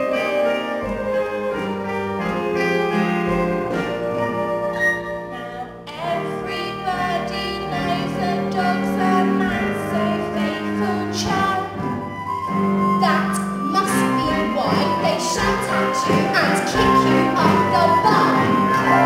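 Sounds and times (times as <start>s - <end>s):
instrumental accompaniment: 0.0s - 19.0s
voices singing: 5.3s - 11.8s, 13.0s - 19.0s.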